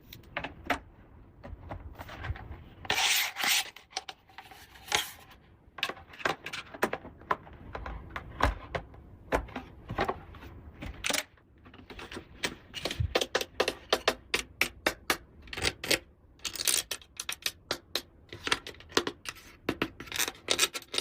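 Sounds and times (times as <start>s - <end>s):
plastic toy pieces clicking: 13.2s - 19.4s.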